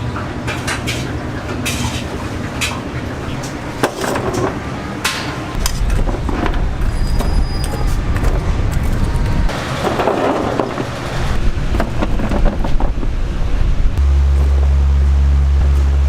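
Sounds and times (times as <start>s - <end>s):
cooking utensils and pans clattering: 0.0s - 7.4s
low rumble: 10.4s - 16.0s.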